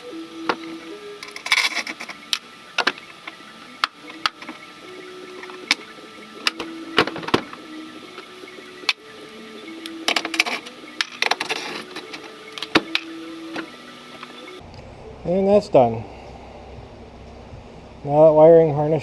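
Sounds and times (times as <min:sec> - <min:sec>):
hand tools clicking and knocking: 0:00.0 - 0:14.6.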